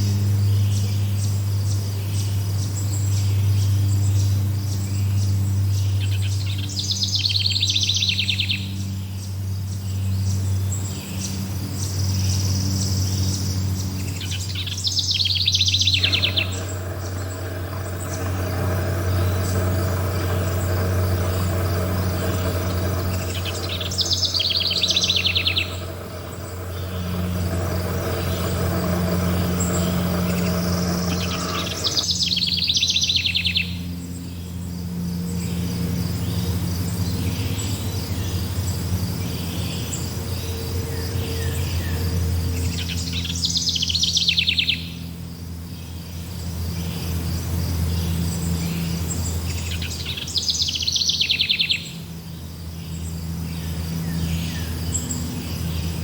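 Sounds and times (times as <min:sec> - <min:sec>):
steady low hum: 0:12.6 - 0:36.2
faint chirping: 0:14.6 - 0:33.0
rapid high bird trill: 0:14.6 - 0:33.2.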